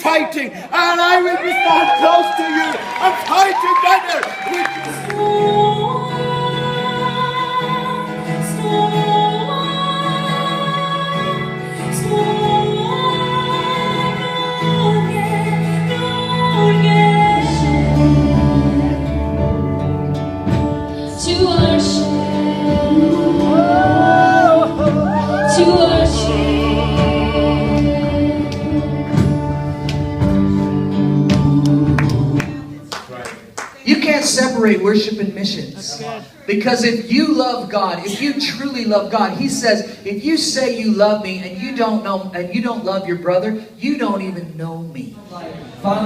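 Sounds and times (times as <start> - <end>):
worship music with singing: 3.6 - 33.5
bass: 4.7 - 32.9.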